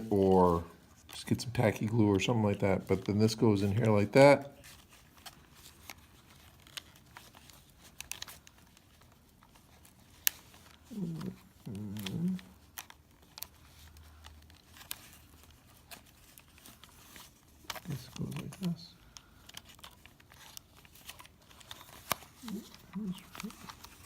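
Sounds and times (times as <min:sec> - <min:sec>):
plastic headset parts clicking: 0:04.6 - 0:24.0
man murmuring: 0:10.9 - 0:12.5, 0:22.4 - 0:23.6.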